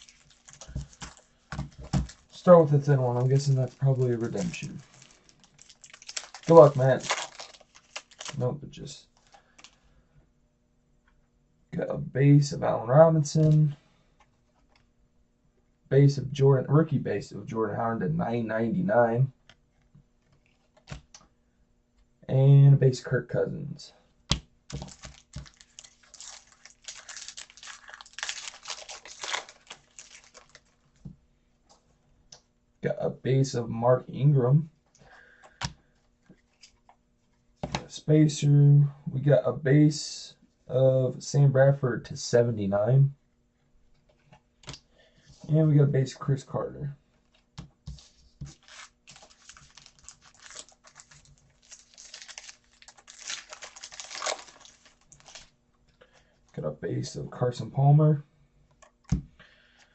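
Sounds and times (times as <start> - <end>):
trading cards rustling and scraping: 0.0 - 8.4, 24.7 - 30.8, 36.2 - 37.8, 47.2 - 55.5.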